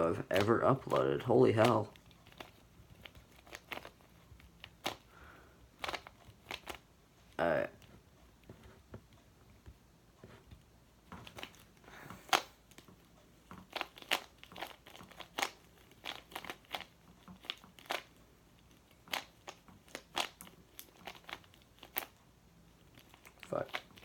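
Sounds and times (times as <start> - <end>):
speed cube clicking turns: 5.8 - 6.8, 13.5 - 22.2.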